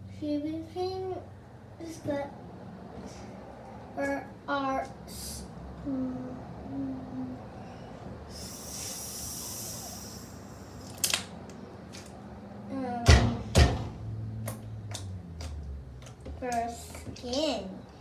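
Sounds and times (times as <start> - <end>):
short hiss: 8.4 - 10.9
heavy thumps: 13.0 - 14.1.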